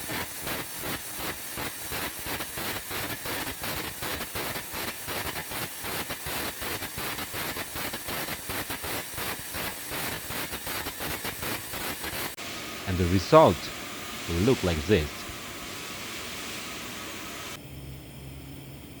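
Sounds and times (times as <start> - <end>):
compressed air hissing: 8.1 - 17.6.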